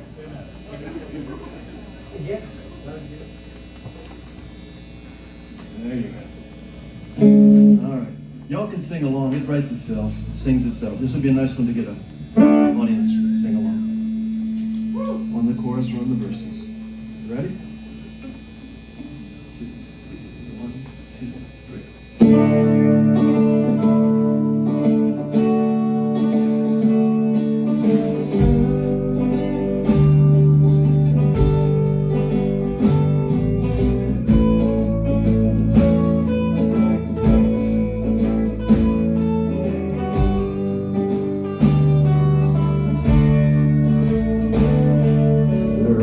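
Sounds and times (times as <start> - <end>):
bass line: 5.8 - 19.5, 21.5 - 46.0
country waltz guitar: 7.0 - 18.4, 22.2 - 46.0
drum beat: 27.8 - 40.9, 41.6 - 45.7.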